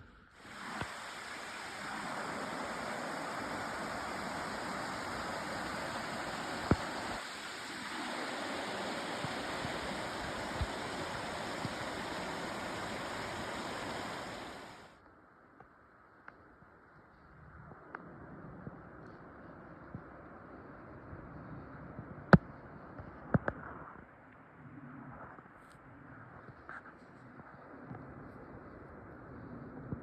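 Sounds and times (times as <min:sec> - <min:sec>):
river water rushing: 0:00.4 - 0:14.9.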